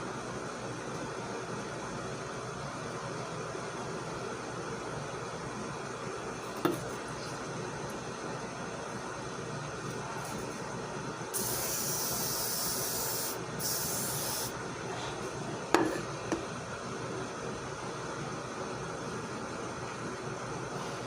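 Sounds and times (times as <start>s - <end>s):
aerosol hair spray bursts: 11.4s - 14.5s.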